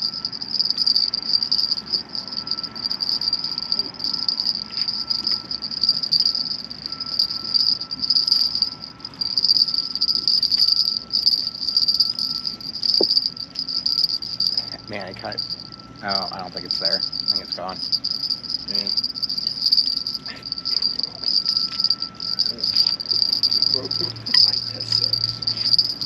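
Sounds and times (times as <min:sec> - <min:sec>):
low steady tone: 0:00.0 - 0:26.0
night insects trilling: 0:00.0 - 0:26.0.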